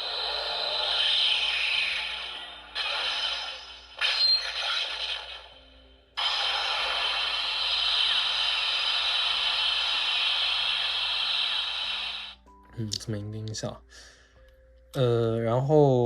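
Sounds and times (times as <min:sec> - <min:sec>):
long hissing blast: 0:00.0 - 0:05.5, 0:06.2 - 0:12.4
toy sound effect from small speaker: 0:00.2 - 0:05.6.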